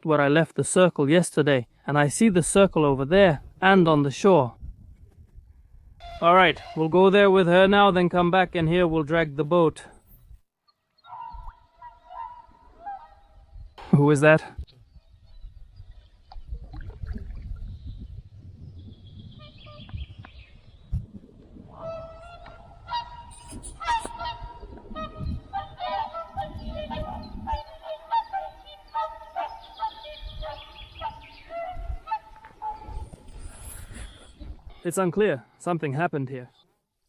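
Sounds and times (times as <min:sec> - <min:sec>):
geese honking: 0:06.0 - 0:07.1, 0:11.0 - 0:13.4, 0:21.7 - 0:33.0.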